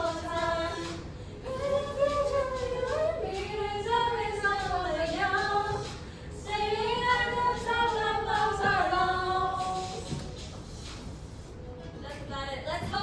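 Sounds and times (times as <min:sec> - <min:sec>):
women singing slow song: 0:00.0 - 0:10.4.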